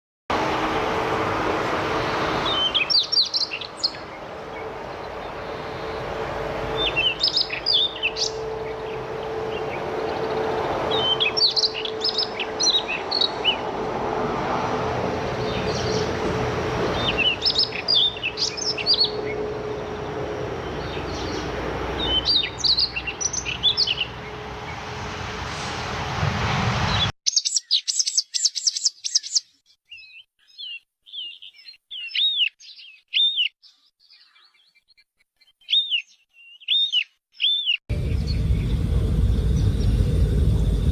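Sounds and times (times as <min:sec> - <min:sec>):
songbird chirping: 0:01.9 - 0:13.8, 0:15.4 - 0:25.0, 0:27.0 - 0:40.8
bird chirping rapidly: 0:02.0 - 0:06.0, 0:06.7 - 0:13.6, 0:16.9 - 0:19.5, 0:20.6 - 0:24.8, 0:26.9 - 0:34.9, 0:35.6 - 0:40.1
low background rumble: 0:37.9 - 0:40.9.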